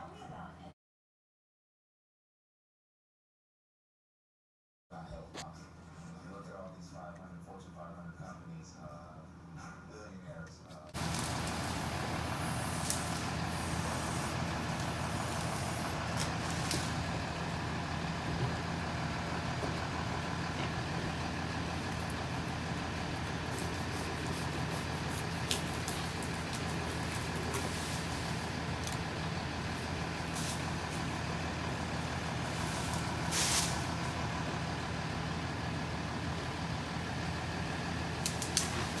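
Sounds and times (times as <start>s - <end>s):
diesel engine droning: 11.0s - 39.0s
short hiss: 32.7s - 33.9s.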